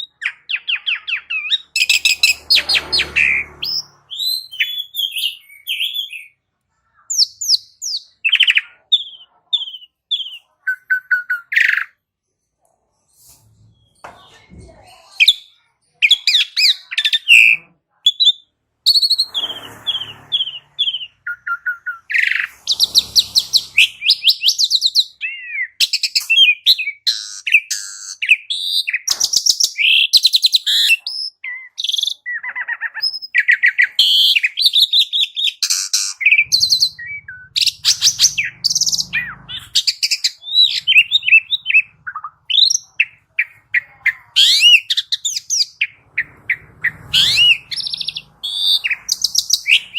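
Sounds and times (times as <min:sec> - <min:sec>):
bird singing whistles and chatter: 0:00.0 - 0:06.4, 0:07.1 - 0:12.0, 0:15.0 - 0:49.9
harsh rasping bird calls: 0:00.0 - 0:12.0, 0:15.0 - 0:49.9.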